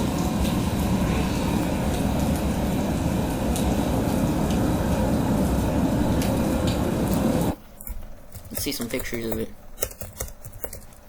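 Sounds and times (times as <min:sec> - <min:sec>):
strong storm wind roaring: 0:00.0 - 0:07.6.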